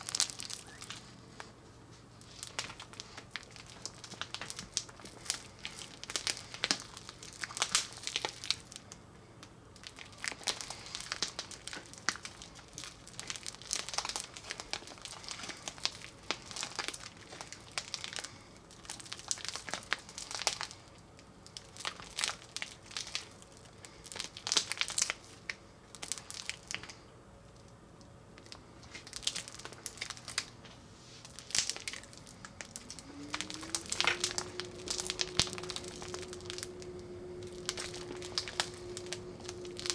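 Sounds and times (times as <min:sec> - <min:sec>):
slime crackling and popping: 0:00.0 - 0:01.5, 0:02.2 - 0:27.0, 0:28.4 - 0:39.9
low tone sliding up in pitch: 0:32.8 - 0:39.9.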